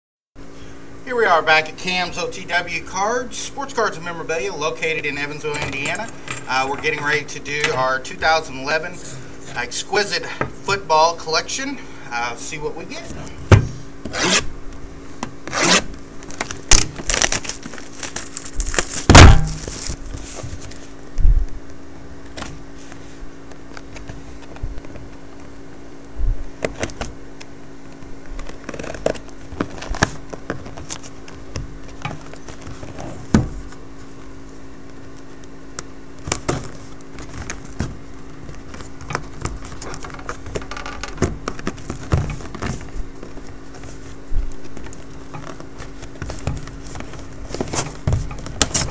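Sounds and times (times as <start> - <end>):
low hum: 3.5 - 48.9
wrapper tearing: 15.5 - 20.8.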